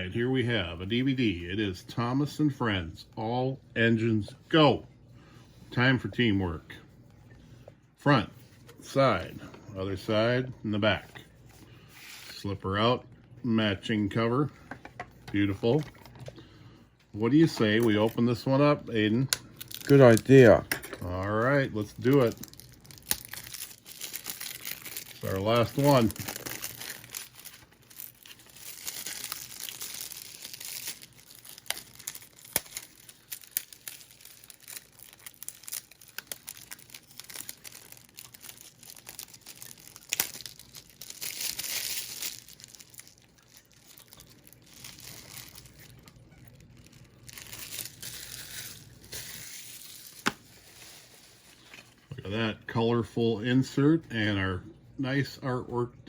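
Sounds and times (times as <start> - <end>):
plastic wrap crinkling and tearing: 17.1 - 52.1.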